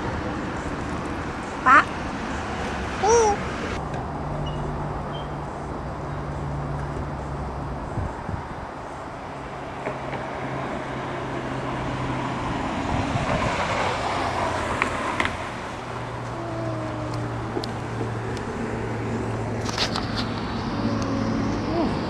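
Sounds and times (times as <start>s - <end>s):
road traffic noise: 0.0s - 22.0s
car engine hum: 13.9s - 22.0s.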